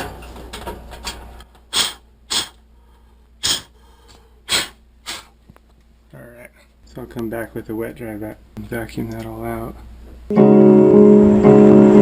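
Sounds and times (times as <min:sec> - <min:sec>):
sharp hissy breath puffs: 0:01.7 - 0:05.4.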